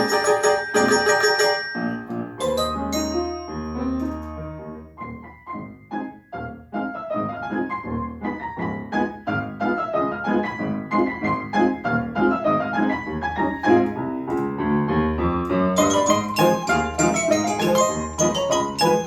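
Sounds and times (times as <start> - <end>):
children's instrumental ensemble: 0.0 - 6.2, 15.8 - 19.0
piano quick short notes: 0.0 - 19.0.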